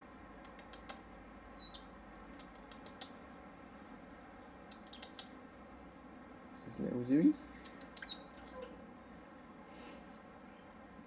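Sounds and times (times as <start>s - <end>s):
small birds chirping: 0.4s - 3.3s, 4.4s - 5.5s, 7.4s - 8.8s
bird twittering calls: 1.6s - 3.2s, 4.6s - 5.4s, 7.6s - 8.4s.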